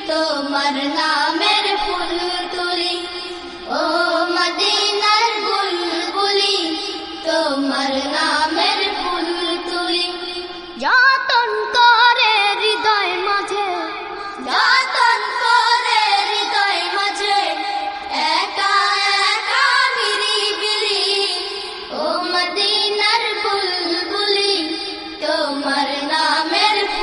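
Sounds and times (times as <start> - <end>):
person singing devotional song: 0.0 - 27.0.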